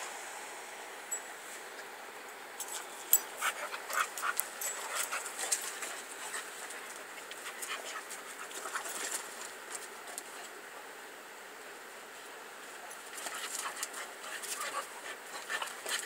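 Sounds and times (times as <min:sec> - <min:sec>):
sharp clicks and rustles: 0:02.6 - 0:10.6
dog panting: 0:03.4 - 0:09.5, 0:13.2 - 0:16.0.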